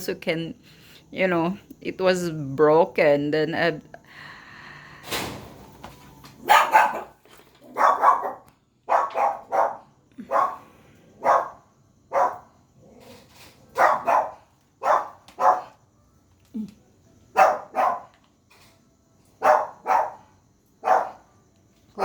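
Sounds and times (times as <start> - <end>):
dog barking: 6.4 - 12.5, 13.7 - 15.8, 17.3 - 18.2, 19.4 - 21.3.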